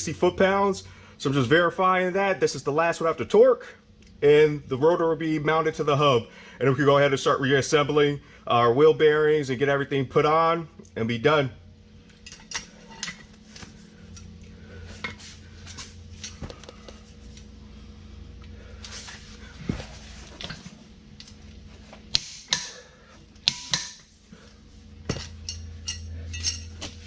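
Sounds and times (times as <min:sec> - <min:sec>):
low steady hum: 0:00.0 - 0:27.0
metal tools clinking and clanking: 0:12.2 - 0:13.3, 0:25.1 - 0:27.0.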